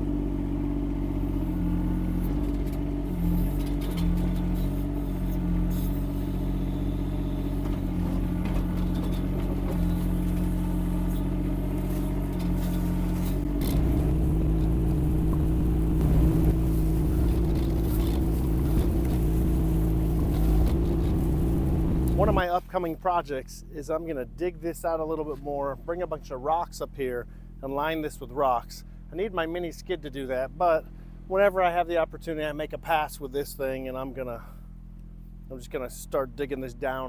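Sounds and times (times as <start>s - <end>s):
excavator diesel engine running: 0.0s - 23.0s.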